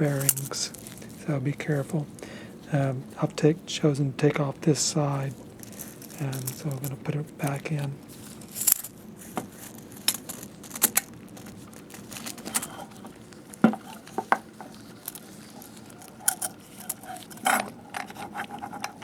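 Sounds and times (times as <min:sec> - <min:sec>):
metal parts clicking and knocking: 0:05.6 - 0:07.6, 0:08.4 - 0:09.0, 0:09.6 - 0:19.0.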